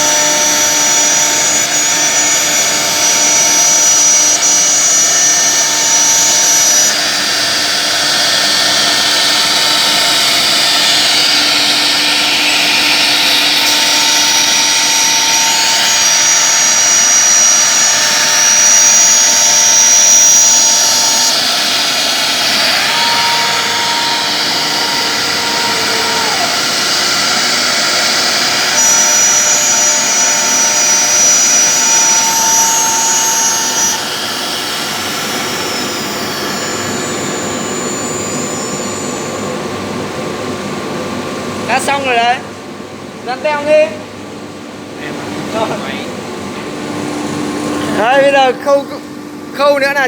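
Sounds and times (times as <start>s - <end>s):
router machining noise: 0.0s - 42.0s
high spindle whine: 0.0s - 42.3s, 44.9s - 50.0s
tone sliding down: 12.2s - 39.4s.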